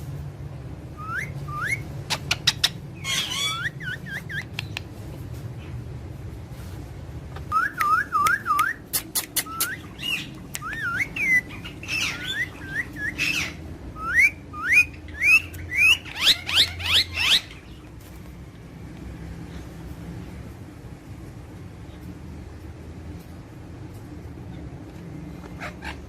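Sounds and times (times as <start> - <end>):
parrot whistling and chirping: 1.0 - 4.8, 7.4 - 17.8
parrot clicks: 7.8 - 10.9.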